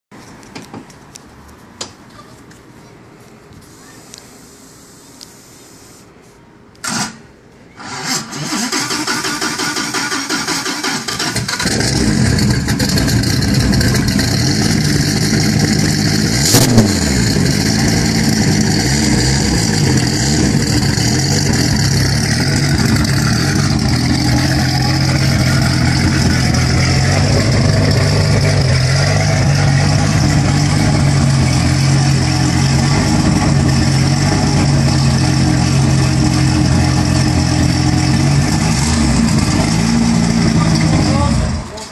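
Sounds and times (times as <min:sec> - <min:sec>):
sharp engine crack: 0:06.8 - 0:41.8
loud lumpy engine idling: 0:11.2 - 0:41.9.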